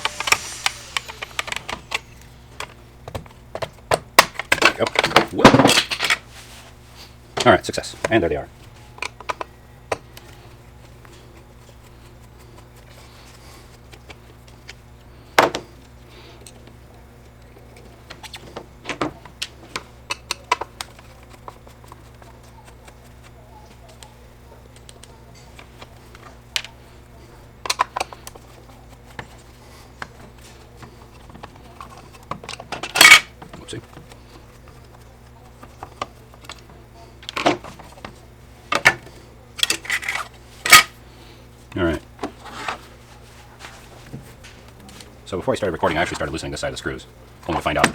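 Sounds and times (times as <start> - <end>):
steady low hum: 0.0 - 47.9
tools clattering set down: 3.6 - 6.3, 39.6 - 41.0.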